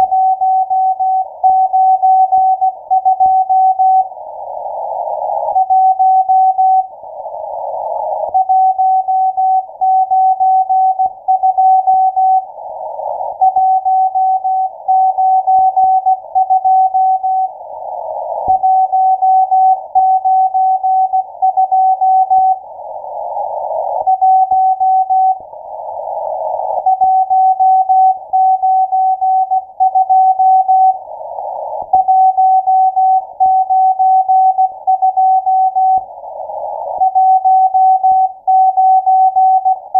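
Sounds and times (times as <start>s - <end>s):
receiver hiss: 0.0s - 39.9s
morse code tone: 13.4s - 17.5s, 26.8s - 31.0s, 31.9s - 36.1s, 37.0s - 39.9s.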